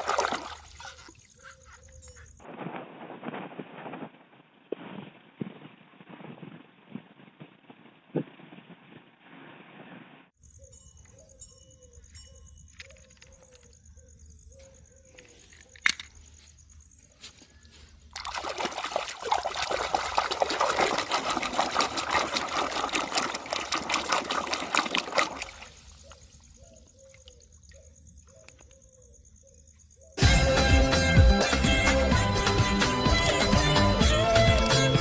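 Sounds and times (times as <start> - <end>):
water splashing onto plastic toys: 0.0 - 0.8, 18.1 - 26.2.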